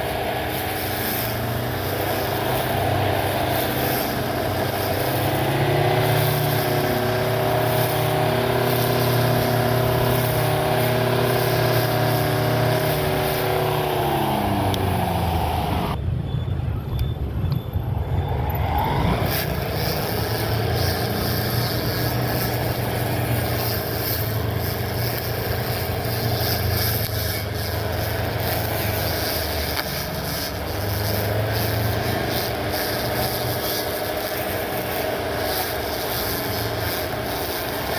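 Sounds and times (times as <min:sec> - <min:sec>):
electric lawn mower motor running: 0:00.0 - 0:16.0, 0:18.3 - 0:37.9.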